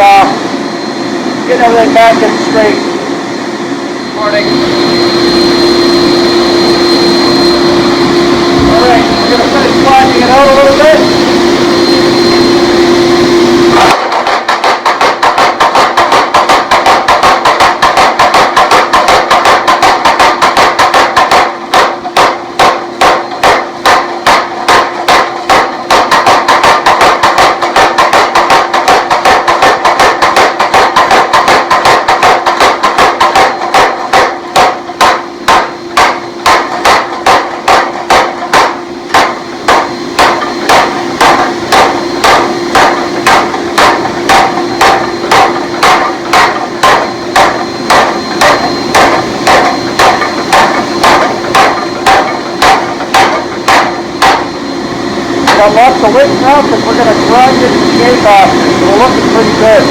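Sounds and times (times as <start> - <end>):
steady hum: 0.0 - 59.9
hammer striking hot steel on anvil: 12.6 - 54.6, 55.4 - 59.9.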